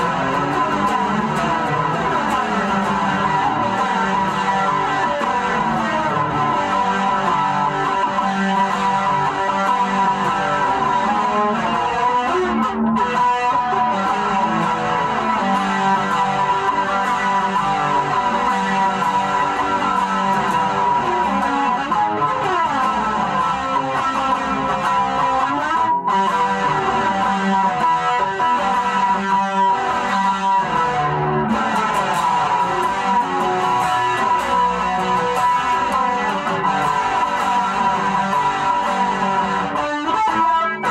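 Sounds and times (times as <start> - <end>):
guitar chord riff: 0.0 - 40.9.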